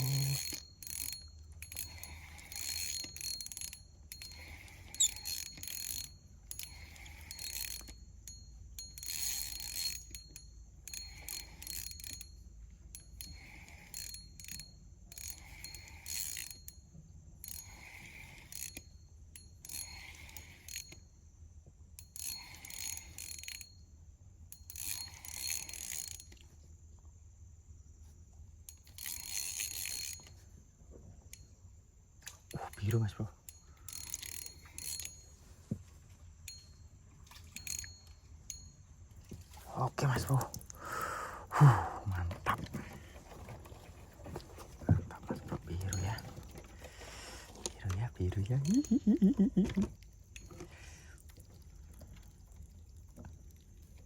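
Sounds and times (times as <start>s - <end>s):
fishing reel ticking and whirring: 0.0s - 16.8s, 17.4s - 21.1s, 22.0s - 23.8s, 24.5s - 26.4s, 28.7s - 30.4s, 32.3s - 35.3s, 37.3s - 38.8s, 45.7s - 49.8s.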